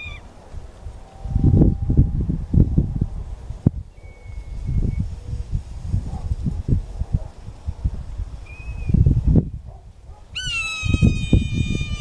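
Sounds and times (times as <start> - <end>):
bird chirping and calling: 0.0 - 0.3, 10.4 - 12.0
wind rumbling on microphone: 0.0 - 12.0.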